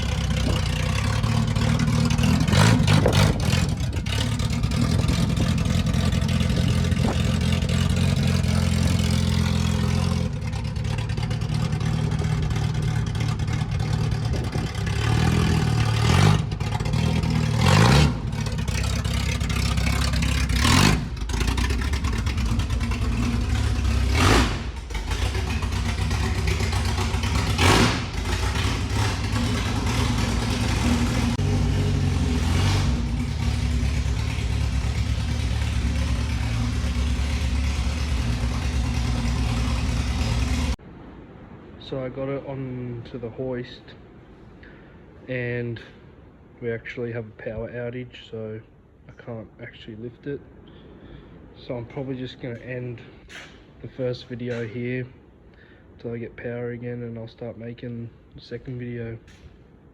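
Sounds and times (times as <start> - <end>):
car engine revving: 0.0 - 40.8.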